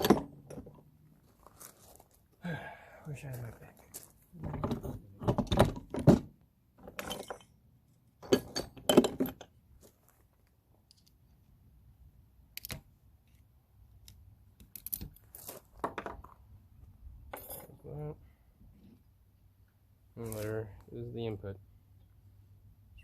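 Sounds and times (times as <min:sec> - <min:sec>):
hand tools clinking on steel: 0:06.8 - 0:07.6.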